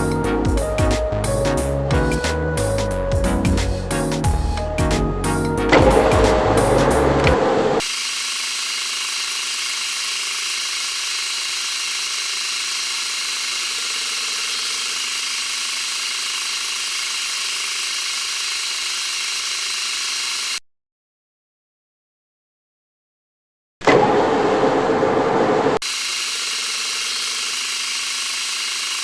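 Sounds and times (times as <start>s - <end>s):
metal lathe running: 5.7s - 20.6s, 25.8s - 29.0s.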